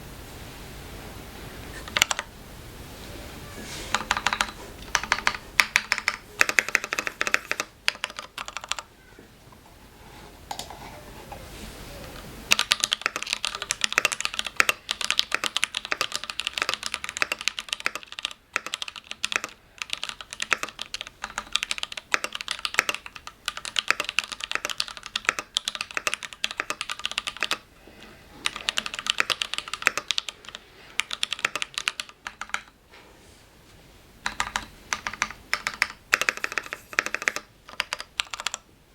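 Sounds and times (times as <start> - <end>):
mechanical keyboard typing: 1.8 - 2.3, 3.9 - 8.9, 12.5 - 27.7, 28.4 - 32.8, 34.2 - 38.7.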